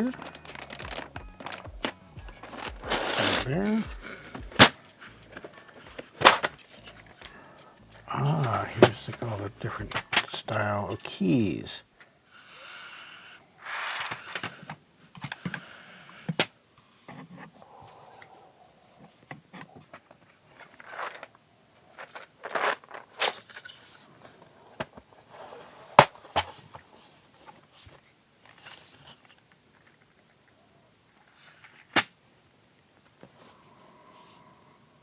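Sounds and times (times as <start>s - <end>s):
rustling and scraping: 0.0s - 11.6s, 13.6s - 16.4s, 19.0s - 30.3s.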